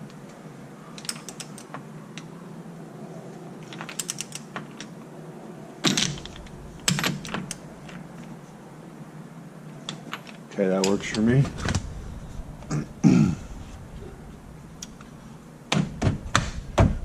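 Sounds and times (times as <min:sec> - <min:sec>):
tools and metal parts clinking: 0:03.6 - 0:04.9
loud knocks: 0:15.7 - 0:17.0.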